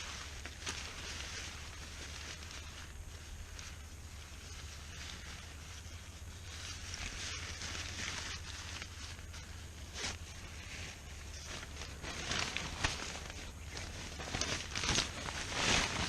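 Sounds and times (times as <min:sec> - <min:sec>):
nylon tarp rustling and swishing: 0:00.0 - 0:16.0.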